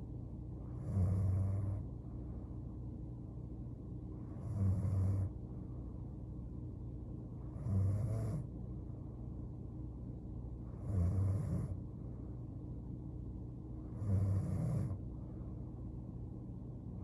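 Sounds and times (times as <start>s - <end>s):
steady low hum: 0.0s - 17.0s
woman snoring: 0.7s - 1.8s, 4.4s - 5.3s, 7.5s - 8.4s, 10.8s - 11.8s, 14.0s - 15.0s.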